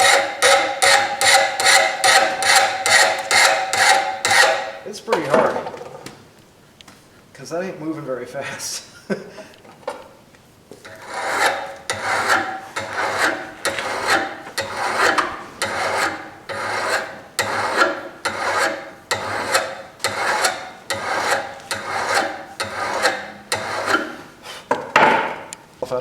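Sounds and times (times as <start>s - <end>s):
file rasping on steel: 0.0s - 4.8s, 10.8s - 24.5s.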